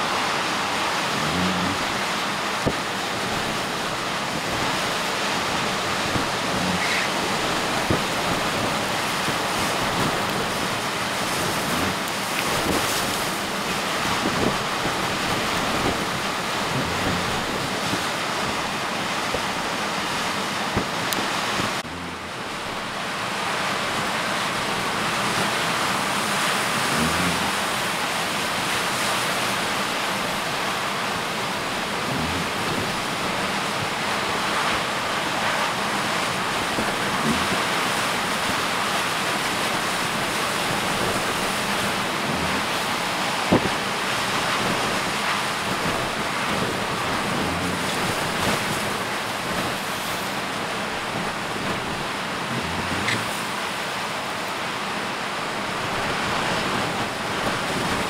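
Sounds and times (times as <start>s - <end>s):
heavy surf: 0.0s - 58.0s
storm wind: 0.0s - 58.0s
wind buffeting microphone: 1.0s - 23.0s, 36.0s - 54.2s.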